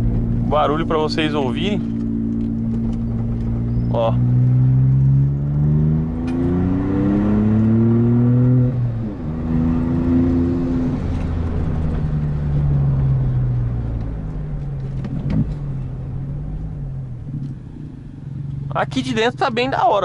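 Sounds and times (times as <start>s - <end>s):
car engine accelerating: 0.0s - 20.0s.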